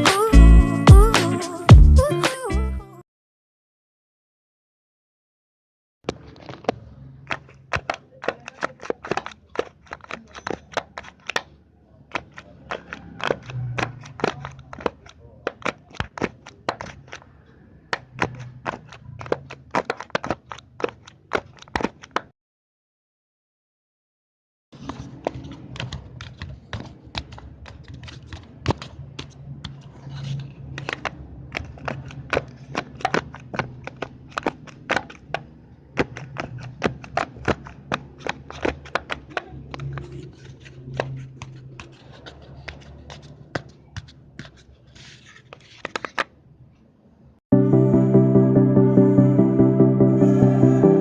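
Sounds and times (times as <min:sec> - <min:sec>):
paper crinkling: 0:06.1 - 0:22.3, 0:24.8 - 0:46.4.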